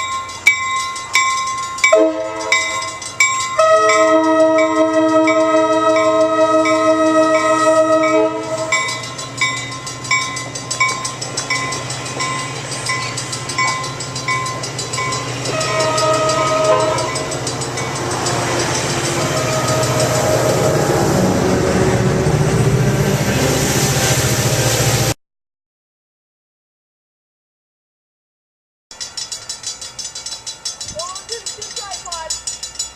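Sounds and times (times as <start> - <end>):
bell dinging: 0.0 - 6.8, 8.0 - 20.1, 28.9 - 32.9
train rumbling past: 0.0 - 25.2, 29.0 - 32.9
train horn chord: 1.9 - 9.0, 15.4 - 17.4, 18.3 - 23.7.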